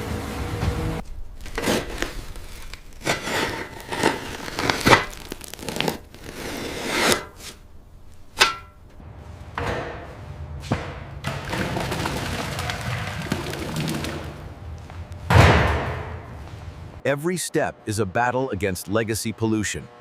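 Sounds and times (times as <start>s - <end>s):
knocks thuds and scrapes: 0.6s - 14.2s, 15.2s - 16.8s.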